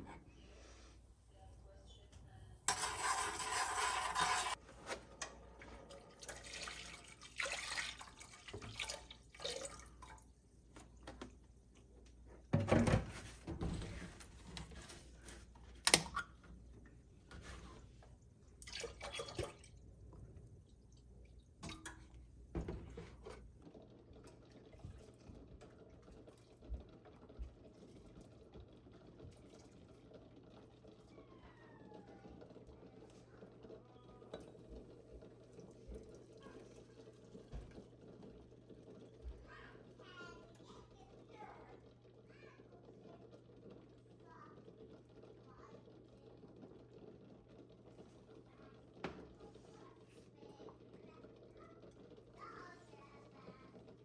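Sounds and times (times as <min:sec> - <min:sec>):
tap running: 0:02.1 - 0:54.0
dishes knocking at a sink: 0:12.5 - 0:14.0.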